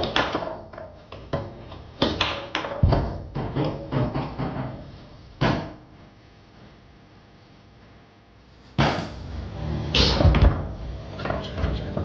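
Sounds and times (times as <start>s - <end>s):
foosball clacks and knocks: 0.0s - 4.8s.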